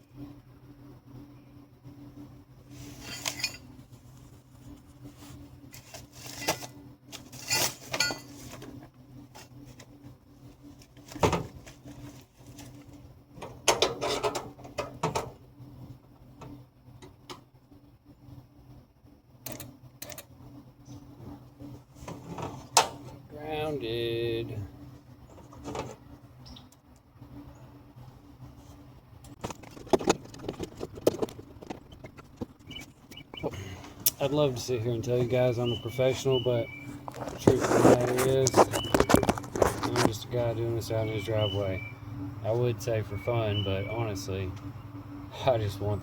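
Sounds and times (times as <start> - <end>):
metal clinks and knocks: 7.3 - 8.5.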